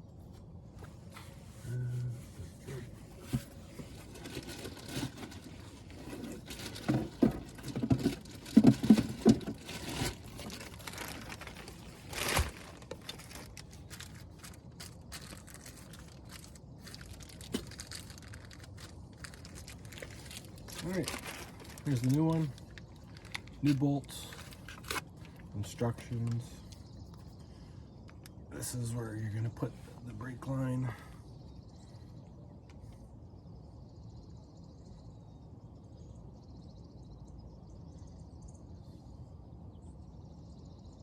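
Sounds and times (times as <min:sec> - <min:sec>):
packaging crinkling and tearing: 0:03.9 - 0:25.4.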